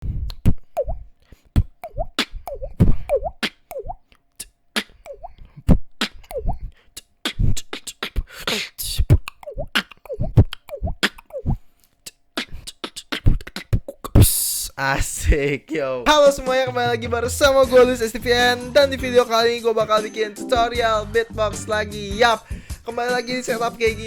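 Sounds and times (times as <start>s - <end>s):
beatbox water drop effects: 0.0s - 1.0s, 1.6s - 11.6s, 12.4s - 14.6s
tongue clicks: 0.0s - 14.6s
beatbox mouth kick drum: 0.0s - 15.4s, 16.1s - 24.0s
beatbox hissing: 1.6s - 14.8s, 16.1s - 24.0s.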